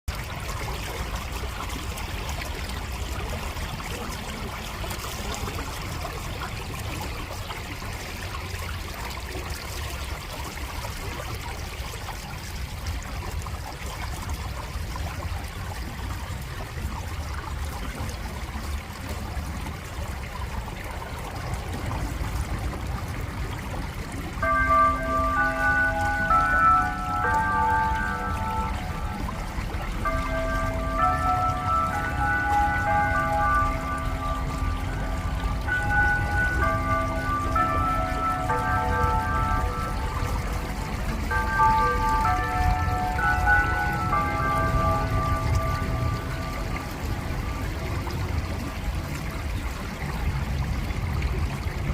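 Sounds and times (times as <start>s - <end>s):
stream flowing: 0.1s - 51.9s
bell chime: 24.4s - 49.0s.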